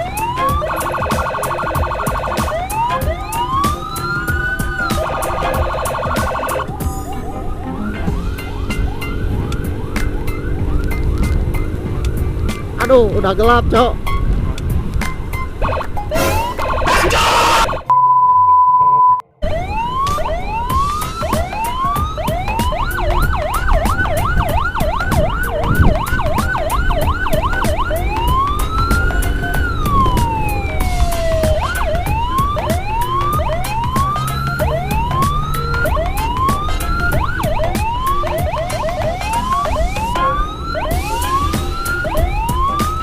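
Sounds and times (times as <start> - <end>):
steady beep tone: 0.0 - 7.4, 15.6 - 24.2
electronic siren: 0.0 - 12.9, 15.6 - 18.0, 18.9 - 43.0.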